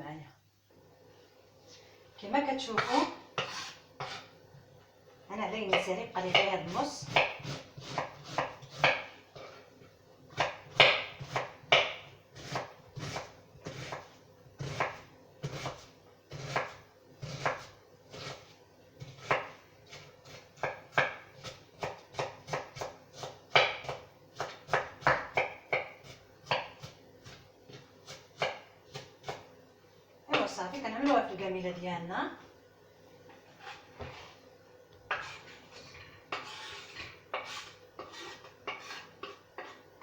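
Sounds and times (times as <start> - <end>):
knife chopping on cutting board: 2.8 - 4.3, 5.7 - 9.6, 10.3 - 29.4, 35.1 - 35.6, 36.3 - 39.8.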